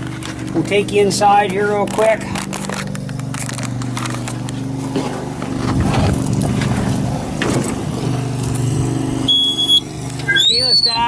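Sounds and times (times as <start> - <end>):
diesel engine idling: 0.0 - 11.0
knocks and rustles in cab: 3.0 - 8.2
short electronic beep: 9.3 - 11.0.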